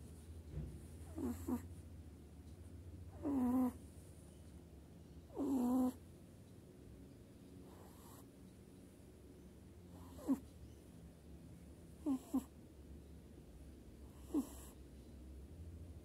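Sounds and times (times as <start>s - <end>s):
kitten snoring: 1.0s - 1.7s, 3.1s - 3.8s, 5.3s - 6.0s, 7.7s - 8.3s, 9.9s - 10.4s, 12.0s - 12.5s, 14.1s - 14.8s.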